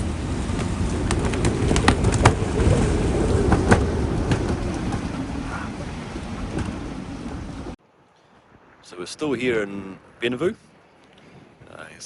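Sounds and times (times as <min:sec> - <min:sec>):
gusting wind buffeting microphone: 0:00.0 - 0:12.0.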